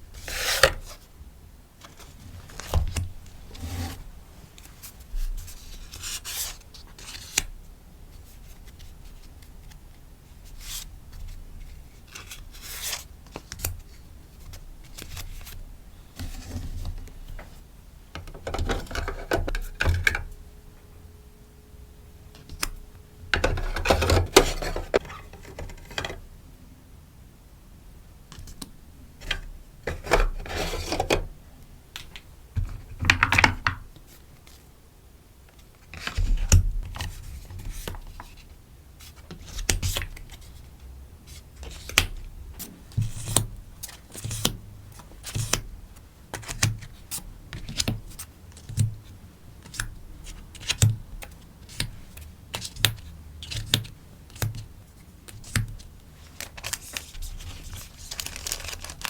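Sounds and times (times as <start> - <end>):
packaging rustling: 56.2 - 59.0.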